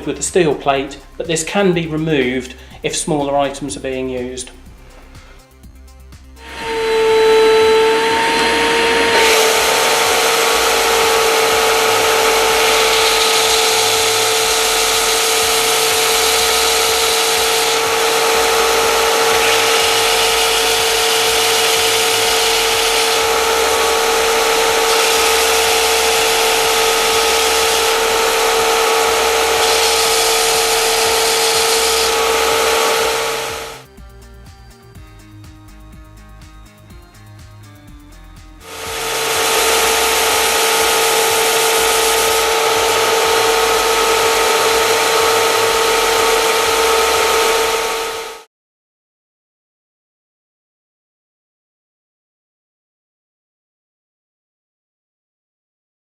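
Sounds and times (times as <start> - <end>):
sander motor whining: 6.4 - 33.9, 38.6 - 48.5
wood being sanded: 6.4 - 33.9, 38.6 - 48.5.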